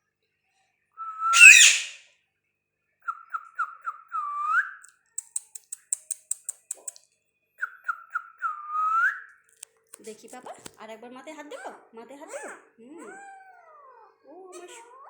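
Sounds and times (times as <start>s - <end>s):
parrot whistling: 1.2s - 2.0s
parrot squawking: 1.3s - 2.0s
sharp high chirps: 1.3s - 2.0s.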